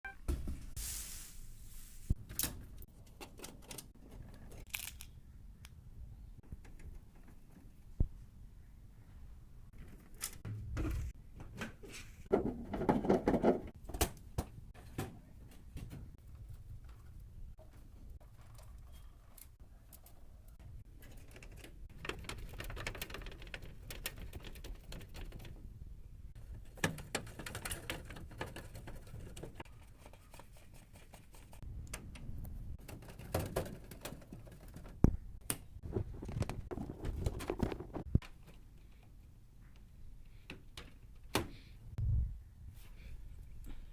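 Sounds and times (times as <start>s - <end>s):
pc components clicking and rustling: 16.2s - 25.6s, 26.4s - 30.2s, 30.9s - 41.4s.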